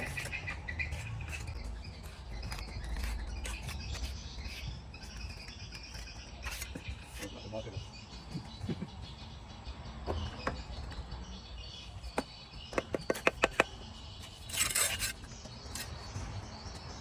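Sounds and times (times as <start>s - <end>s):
tool scraping brick: 0.0s - 7.4s, 12.2s - 16.3s
hand tools tapping on brick: 12.2s - 13.8s.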